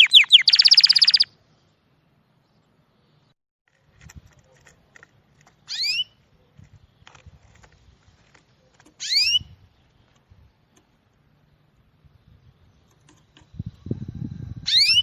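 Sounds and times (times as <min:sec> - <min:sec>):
bird squealing calls: 0:00.0 - 0:01.3.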